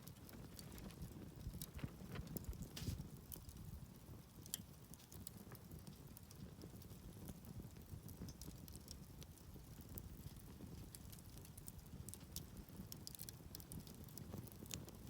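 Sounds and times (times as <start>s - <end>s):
campfire crackling and popping: 0.0s - 15.0s.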